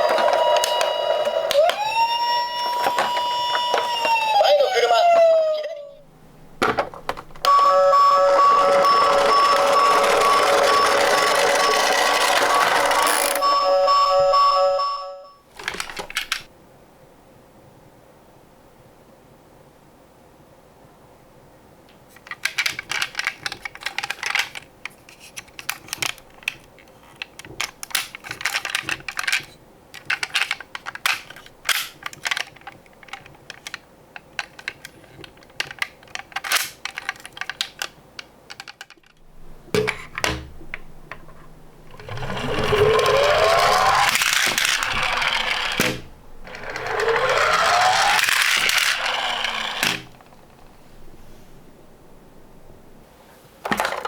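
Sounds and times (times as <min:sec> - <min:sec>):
toy cars clattering together: 0:02.6 - 0:04.2, 0:08.6 - 0:13.4, 0:15.6 - 0:16.5, 0:22.1 - 0:39.2, 0:42.0 - 0:50.4, 0:53.6 - 0:54.0
toy car wheels rumbling on wood: 0:08.5 - 0:13.4, 0:41.9 - 0:50.4.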